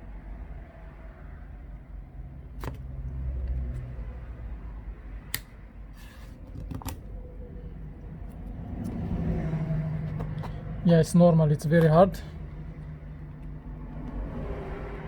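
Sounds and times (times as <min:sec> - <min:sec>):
sharp clicks of clips popping: 0:05.2 - 0:05.8.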